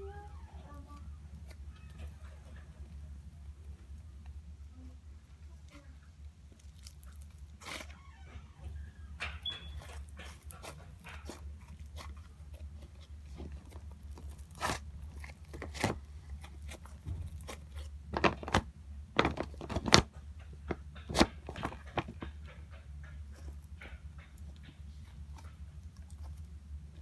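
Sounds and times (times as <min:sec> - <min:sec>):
low steady hum: 0:00.0 - 0:27.0
slime crackling and popping: 0:06.5 - 0:08.0, 0:12.8 - 0:18.6.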